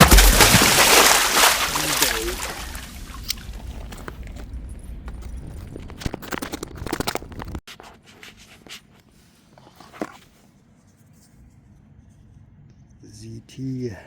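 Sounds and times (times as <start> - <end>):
packaging scratching and clicking: 3.2 - 10.4.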